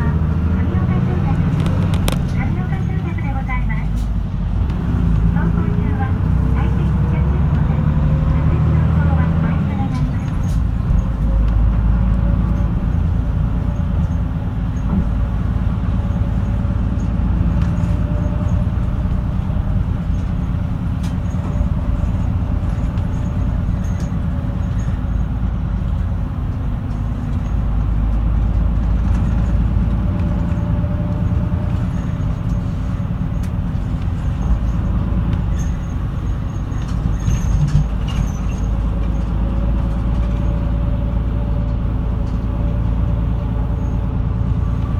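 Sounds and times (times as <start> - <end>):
bus engine and road noise: 0.0 - 44.9
light rattles: 9.0 - 44.9.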